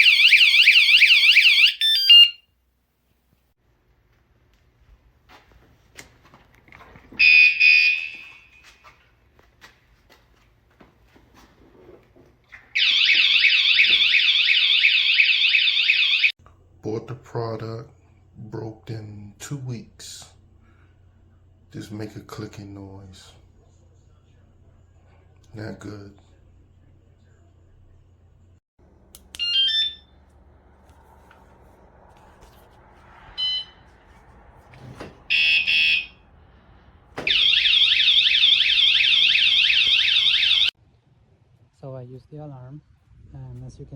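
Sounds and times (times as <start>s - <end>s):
alarm beeps: 0.0s - 2.4s, 7.2s - 8.6s, 12.8s - 16.3s, 29.4s - 30.1s, 33.4s - 33.8s, 35.3s - 36.2s, 37.3s - 40.7s
alarm chirps: 0.0s - 2.4s, 7.2s - 8.6s, 12.8s - 16.3s, 29.4s - 30.2s, 33.4s - 33.8s, 35.3s - 36.2s, 37.3s - 40.7s
warbling alarm siren: 0.0s - 2.4s, 7.2s - 8.6s, 12.8s - 16.4s, 29.4s - 30.2s, 33.4s - 34.0s, 35.3s - 36.3s, 37.2s - 40.7s.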